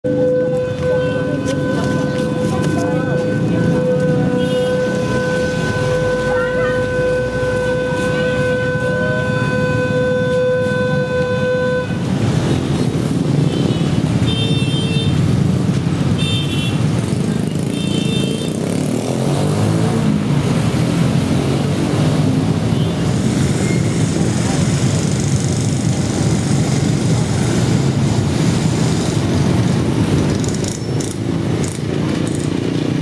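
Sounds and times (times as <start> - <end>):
long horn-like tone: 0.0 - 12.5
busy street traffic: 0.0 - 33.0.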